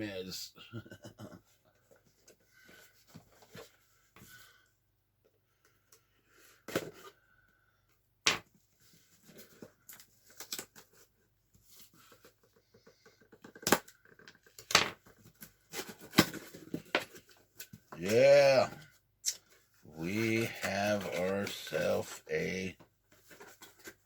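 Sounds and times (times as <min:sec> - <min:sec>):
cardboard and paper rustling: 0:01.8 - 0:04.2, 0:08.8 - 0:24.0.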